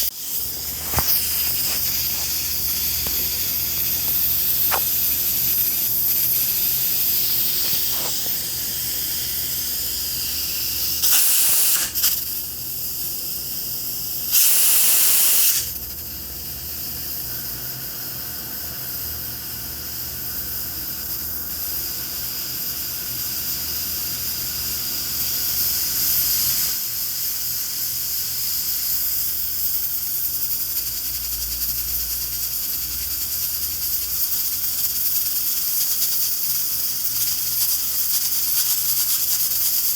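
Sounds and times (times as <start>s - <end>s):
steam venting bursts: 0.0s - 12.4s, 14.3s - 15.7s
pressure cooker hissing: 0.0s - 39.9s.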